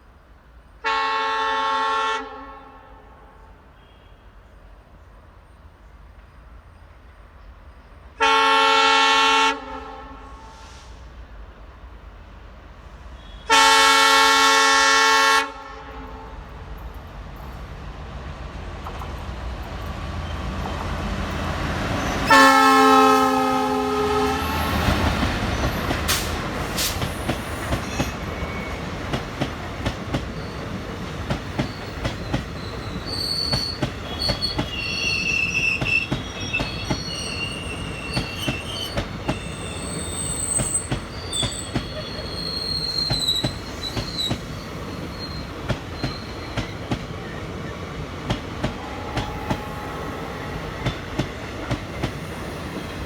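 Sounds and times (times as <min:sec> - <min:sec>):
train rumbling past: 0:00.0 - 0:53.0
locomotive horn blasts: 0:00.8 - 0:03.1, 0:08.2 - 0:10.8, 0:13.2 - 0:16.5, 0:22.2 - 0:24.9, 0:48.6 - 0:51.2
high-pitched wheel squeal: 0:32.6 - 0:47.4.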